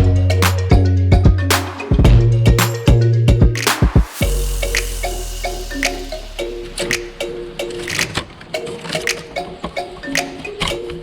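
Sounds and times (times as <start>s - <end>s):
melodic notes over percussive beat: 0.0s - 11.0s
sharp percussive hit: 1.4s - 9.3s.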